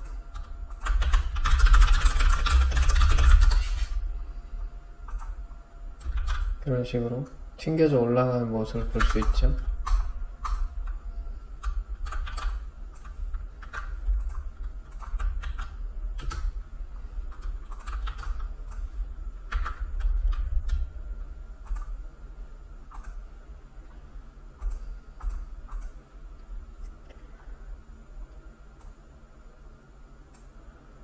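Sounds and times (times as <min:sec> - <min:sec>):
computer keyboard typing: 0:00.0 - 0:03.7, 0:06.0 - 0:06.6, 0:08.8 - 0:11.0, 0:11.6 - 0:16.5, 0:17.3 - 0:18.9, 0:19.5 - 0:20.9, 0:24.6 - 0:26.0
steady low hum: 0:00.0 - 0:31.0.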